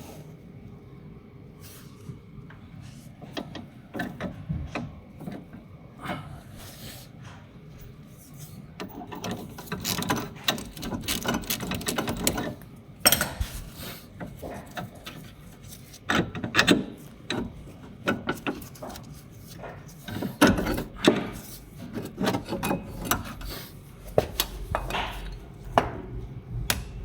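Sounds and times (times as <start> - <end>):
hand tools clicking and rattling: 8.9 - 13.5.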